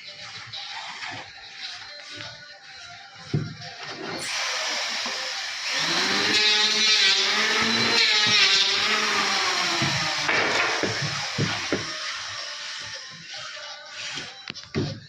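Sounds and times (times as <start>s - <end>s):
power tool cutting wood: 4.2s - 13.5s.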